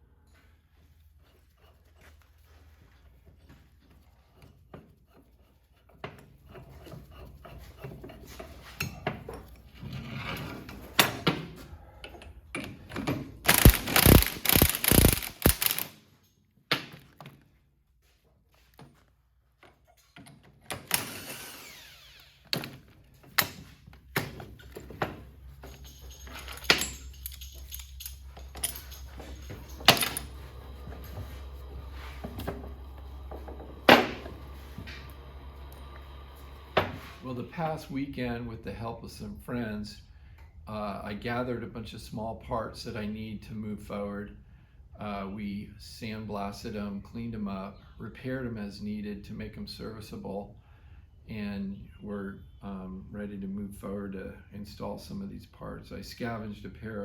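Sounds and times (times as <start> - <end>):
power tool burst: 13.5 - 16.0, 20.9 - 22.4
metal tools clanking: 23.3 - 35.1
steady low hum: 24.4 - 38.7.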